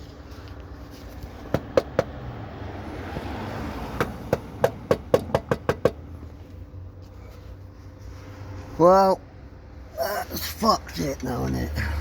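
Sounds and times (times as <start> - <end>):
metallic knocks on car underbody: 1.5 - 2.2, 4.0 - 6.0.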